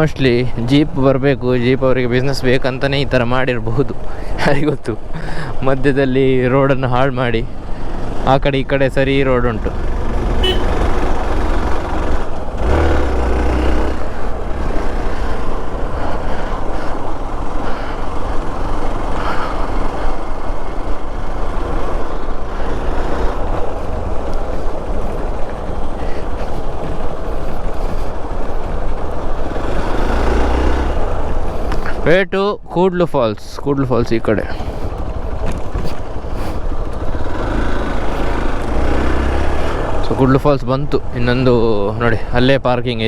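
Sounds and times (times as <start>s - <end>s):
motorcycle riding along road: 0.0s - 32.2s, 33.5s - 43.0s.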